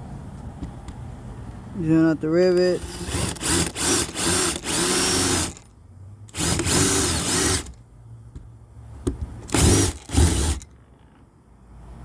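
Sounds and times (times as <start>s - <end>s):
power drill drilling rivets: 2.6s - 5.7s, 6.3s - 7.8s, 9.4s - 10.8s.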